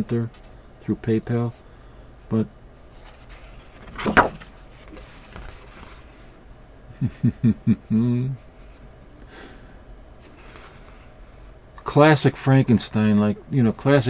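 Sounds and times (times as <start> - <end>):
man breathing: 1.6 - 2.2, 9.2 - 9.9
man chuckling: 6.9 - 8.4
man humming: 7.0 - 8.4.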